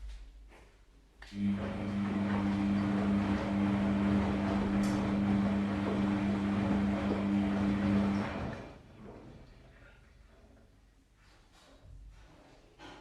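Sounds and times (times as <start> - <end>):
washing machine drum running: 1.4 - 9.5.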